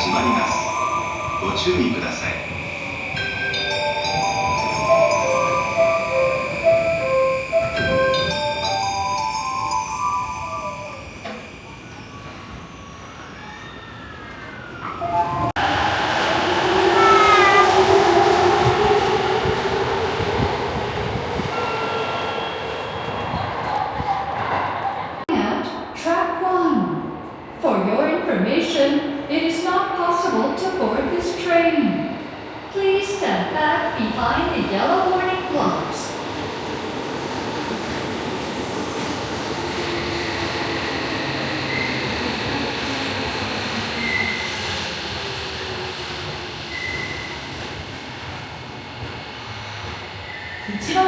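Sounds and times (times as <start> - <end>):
train rumble: 0.0 - 12.6, 14.5 - 26.0.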